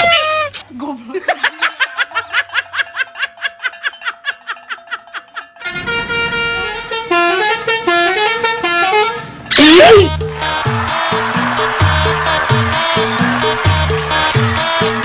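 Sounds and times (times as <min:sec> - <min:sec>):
musical bus air horn: 0:05.6 - 0:15.0.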